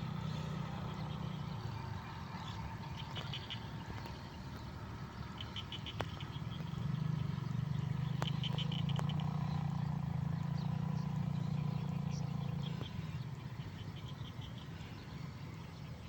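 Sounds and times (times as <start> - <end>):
low hum of frog chorus: 0.0 - 16.0
high-pitched pulsed frog calls: 5.3 - 6.7, 8.2 - 9.5.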